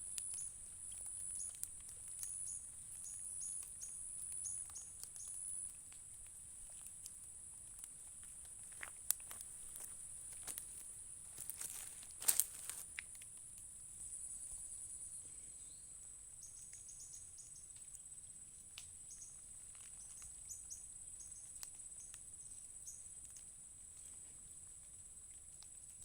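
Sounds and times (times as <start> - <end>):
faint clicks: 0.0 - 13.7
insects trilling: 0.0 - 26.0.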